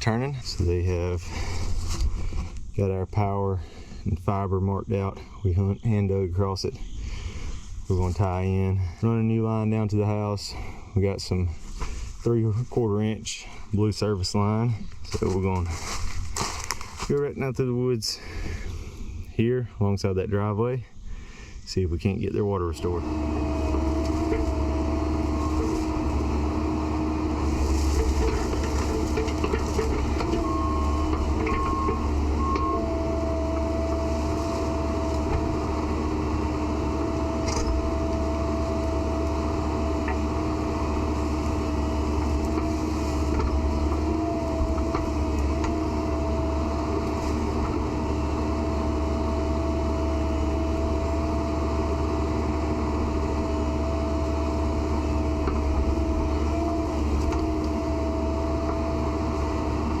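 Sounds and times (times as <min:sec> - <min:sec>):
heavy machine engine running: 0:00.0 - 0:05.4, 0:22.6 - 1:00.0
high whine: 0:21.6 - 0:59.9
short beeps: 0:30.4 - 0:32.9.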